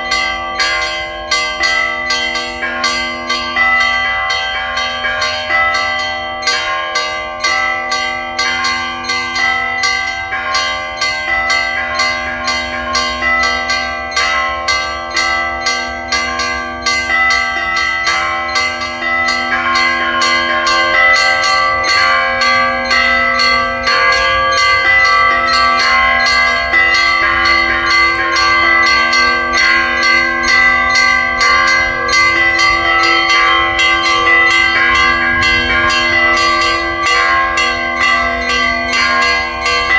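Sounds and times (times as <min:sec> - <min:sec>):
deep bells humming: 0:00.0 - 0:39.9
small church bells pealing: 0:00.0 - 0:39.9.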